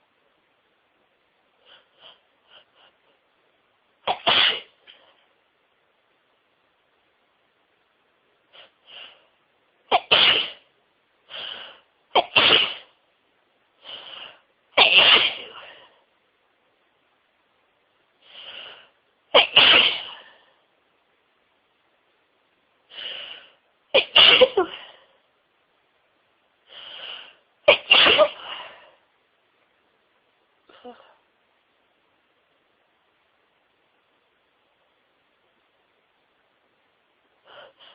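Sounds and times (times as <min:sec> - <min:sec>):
woman sneezing: 0:10.0 - 0:10.6, 0:14.8 - 0:15.7, 0:19.4 - 0:20.2, 0:24.0 - 0:24.9, 0:27.7 - 0:28.7.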